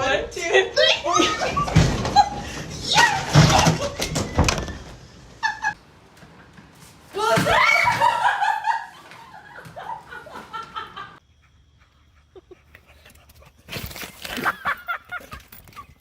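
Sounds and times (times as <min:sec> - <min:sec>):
people laughing: 0:00.6 - 0:04.1, 0:07.8 - 0:11.2, 0:14.3 - 0:15.6.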